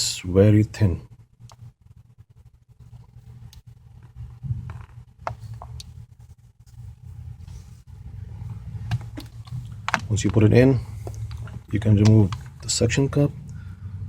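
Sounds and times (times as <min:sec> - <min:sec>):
steady low hum: 0:00.0 - 0:14.0
handling noise: 0:03.9 - 0:13.0.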